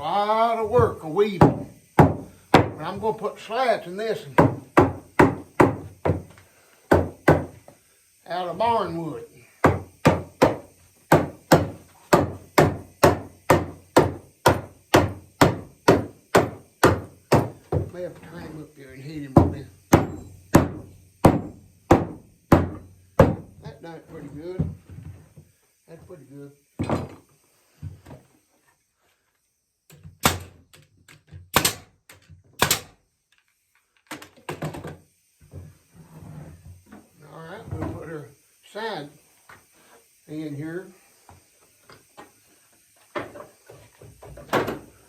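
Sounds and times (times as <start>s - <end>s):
hammer striking wood: 1.4s - 2.8s, 4.4s - 6.3s, 6.9s - 7.6s, 9.6s - 18.0s, 19.4s - 23.5s, 29.9s - 30.6s, 31.5s - 33.0s
knocks on wooden chair frame: 1.4s - 2.8s, 4.4s - 6.3s, 6.9s - 7.6s, 9.6s - 18.0s, 19.4s - 23.5s.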